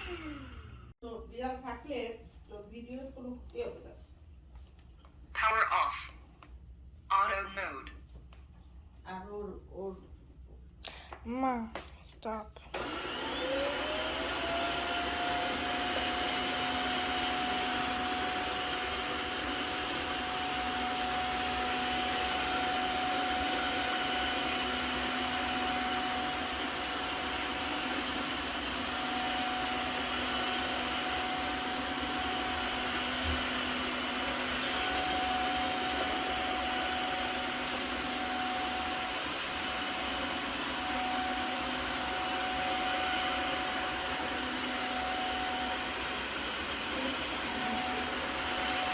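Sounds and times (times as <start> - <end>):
floor vacuum motor whine: 0.0 - 0.9, 12.7 - 48.9.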